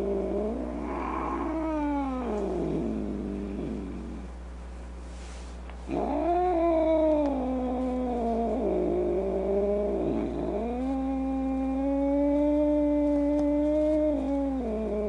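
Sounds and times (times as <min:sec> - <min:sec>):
cat yowling: 0:00.4 - 0:02.8.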